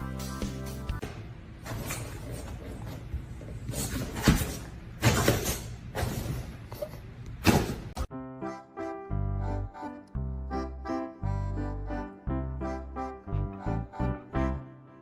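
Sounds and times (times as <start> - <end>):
music: 0.0 - 1.0, 8.1 - 15.0.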